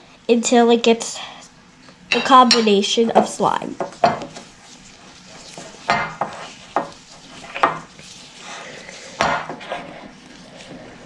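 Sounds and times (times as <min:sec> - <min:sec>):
utensil scraping a bowl: 0:03.2 - 0:11.0.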